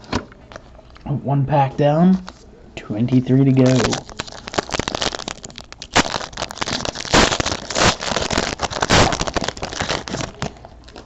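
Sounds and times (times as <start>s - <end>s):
wrapper crinkling: 3.6s - 11.0s
wrapper tearing: 3.6s - 11.0s.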